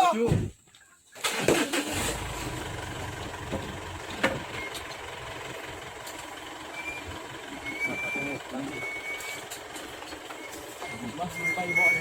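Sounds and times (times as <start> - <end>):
truck engine idling: 1.6 - 12.0
short high beep: 10.8 - 12.0.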